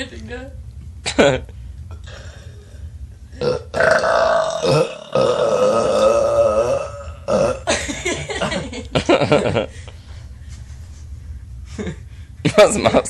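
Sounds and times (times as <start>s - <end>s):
woman belching: 3.4s - 7.8s.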